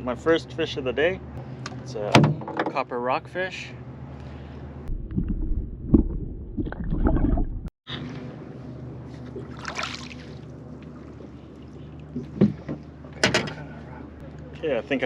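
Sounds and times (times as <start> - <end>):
steady low hum: 3.2 - 15.0
water splashing: 4.9 - 7.7, 9.4 - 11.7
water lapping: 9.1 - 14.1.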